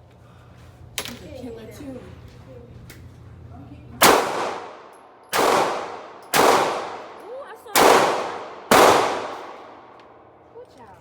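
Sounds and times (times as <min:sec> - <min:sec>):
gunshots with echoing decay: 0:04.0 - 0:10.2.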